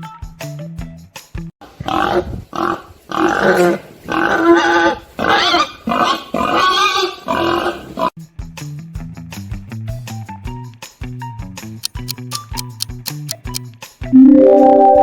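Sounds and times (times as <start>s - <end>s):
pig calling: 1.8s - 8.1s.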